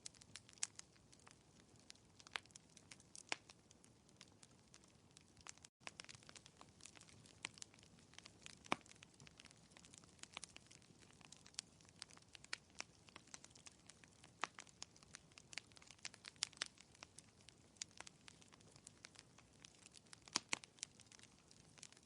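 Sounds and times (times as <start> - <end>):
fireplace crackling: 0.0 - 22.0.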